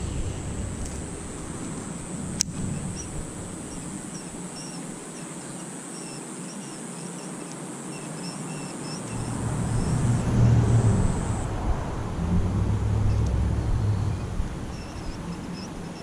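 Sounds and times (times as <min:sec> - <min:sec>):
vehicle passing rumble: 0:00.0 - 0:05.0, 0:09.0 - 0:16.0
distant road traffic: 0:00.0 - 0:16.0
faint bird chirps: 0:02.6 - 0:11.4, 0:13.0 - 0:16.0.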